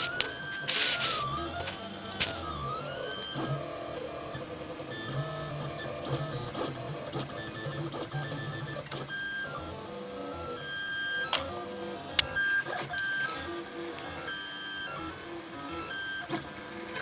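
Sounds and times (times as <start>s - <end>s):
stepper motors whining: 0.0s - 17.0s.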